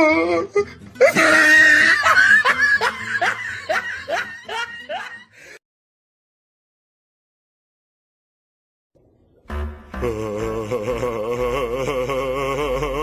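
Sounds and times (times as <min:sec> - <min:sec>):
person laughing: 0:01.0 - 0:05.6.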